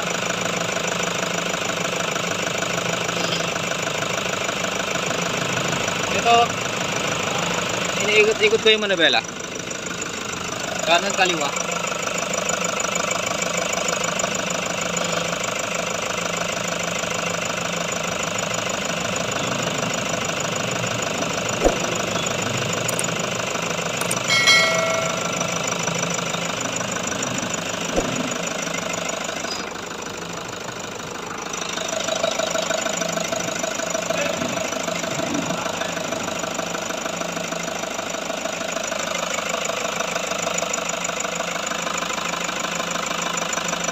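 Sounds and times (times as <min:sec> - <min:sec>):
engine idling: 0:00.0 - 0:43.9
power steering pump running: 0:00.0 - 0:43.9
sharp metallic clink: 0:24.0 - 0:25.9.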